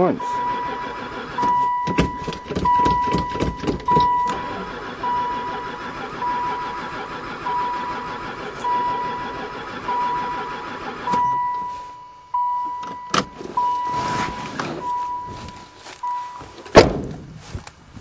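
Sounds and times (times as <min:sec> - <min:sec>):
dashboard warning chime beeping: 0:00.0 - 0:16.6
starter cranking engine: 0:00.3 - 0:11.6.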